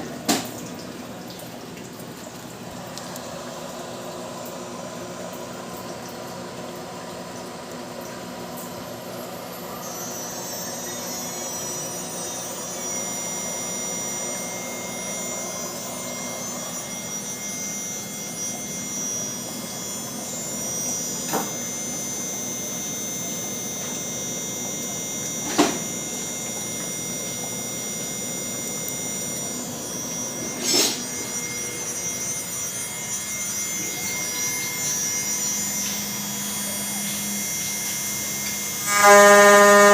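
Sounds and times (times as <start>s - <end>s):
cnc router spindle whine: 2.7s - 39.9s.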